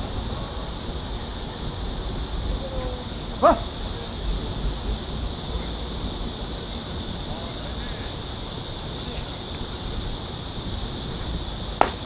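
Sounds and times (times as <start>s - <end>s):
insects chirring: 10.1s - 12.0s.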